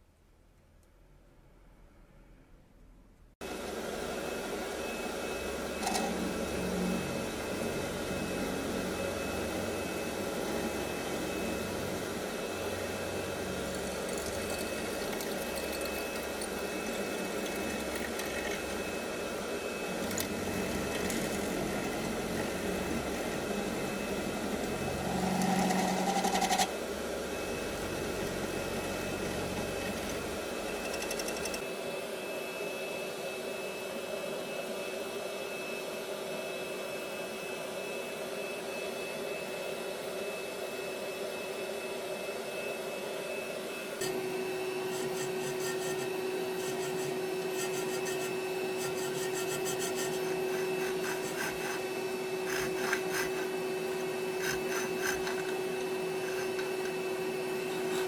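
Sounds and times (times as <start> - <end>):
small machine humming and whining: 3.4 - 58.0.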